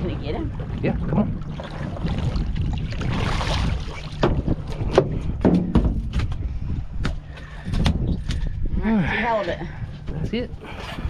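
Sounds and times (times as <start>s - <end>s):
low rumble: 0.0s - 11.0s
wind on microphone: 0.0s - 11.0s
knocks and thumps on boat deck: 3.1s - 8.6s.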